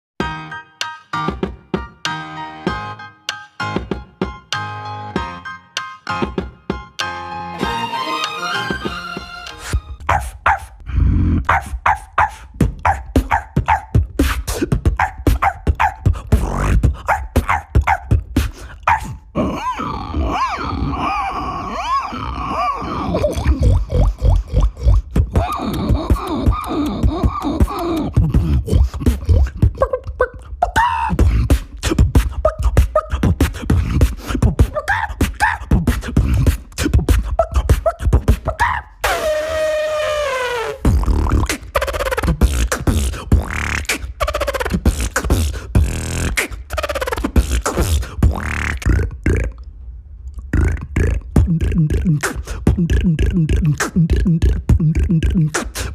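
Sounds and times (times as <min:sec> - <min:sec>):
beatboxing vocal drum strokes: 0:10.0 - 0:20.9, 0:22.8 - 0:49.7, 0:50.4 - 0:55.9
vocal dog bark imitations: 0:10.0 - 0:33.4, 0:34.4 - 0:39.2.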